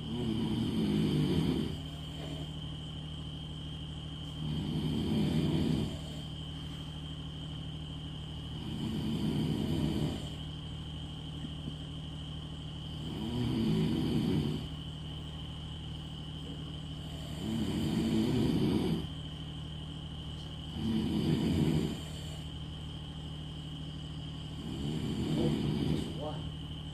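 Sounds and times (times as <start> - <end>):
rough low snoring: 0.0 - 2.6, 4.2 - 6.5, 8.4 - 10.6, 12.8 - 14.8, 16.9 - 19.2, 20.6 - 22.8, 24.2 - 26.5.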